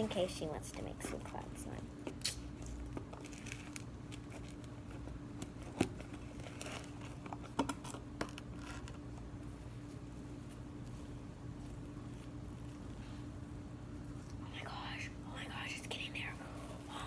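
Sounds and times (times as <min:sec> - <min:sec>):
faint steady hum: 0:00.0 - 0:17.0
plastic container crinkling: 0:02.6 - 0:09.3.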